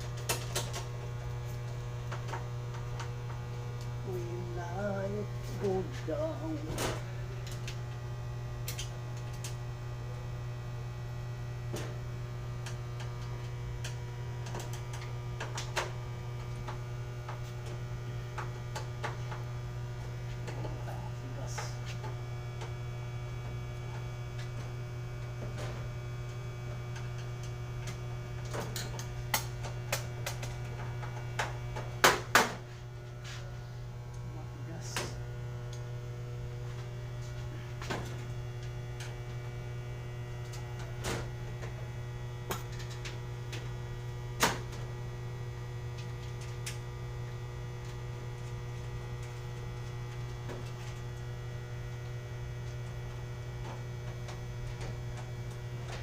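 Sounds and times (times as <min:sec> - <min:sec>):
low electrical hum: 0:00.0 - 0:56.0.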